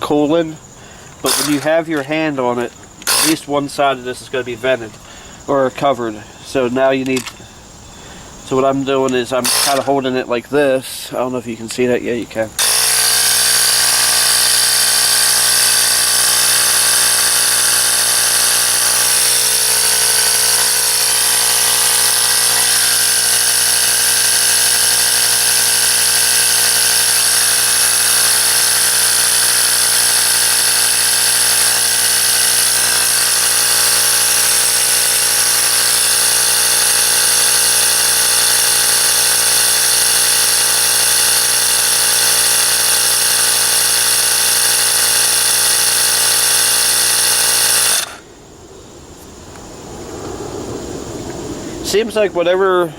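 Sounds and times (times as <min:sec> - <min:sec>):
tyre inflator compressor running: 0:00.8 - 0:03.5, 0:09.4 - 0:10.0, 0:12.6 - 0:48.3.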